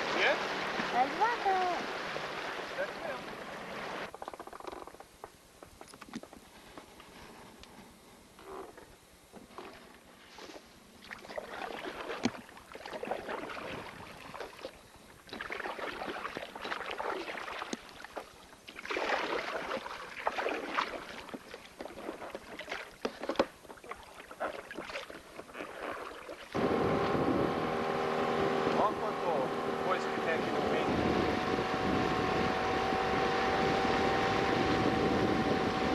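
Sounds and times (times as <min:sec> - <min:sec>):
outboard motor running: 0:00.0 - 0:05.0, 0:21.0 - 0:35.9
water splashing against boat: 0:00.0 - 0:05.0, 0:09.4 - 0:35.9.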